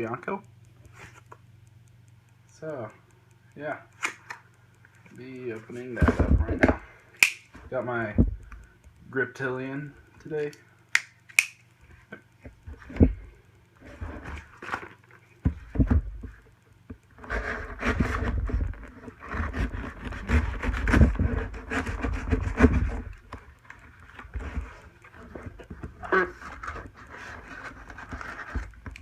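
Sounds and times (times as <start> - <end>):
package handling clicks: 7.1 - 7.5, 10.5 - 12.3
packaging rustling and scraping: 17.2 - 29.0.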